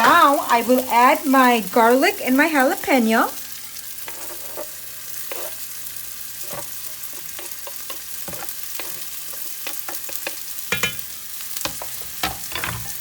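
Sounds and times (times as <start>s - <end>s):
food sizzling in oil: 0.0s - 13.0s
utensil stirring in pan: 3.4s - 13.0s.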